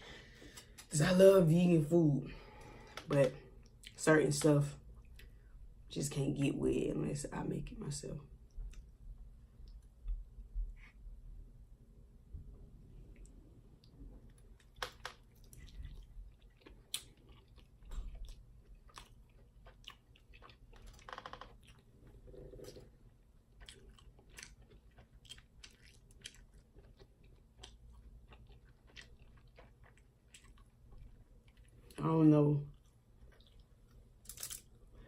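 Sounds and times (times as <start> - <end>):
chewing and biting food: 13.8 - 32.0, 32.7 - 34.8.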